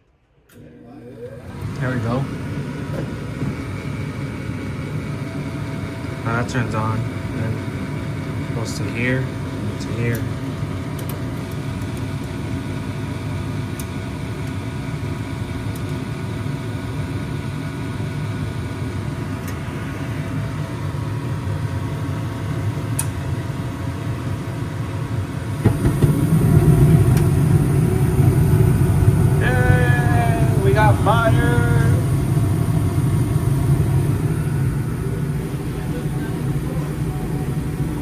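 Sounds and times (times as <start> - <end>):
furnace hum: 0.0 - 38.0
faint whining tones: 25.6 - 38.0
low rumble: 25.6 - 38.0.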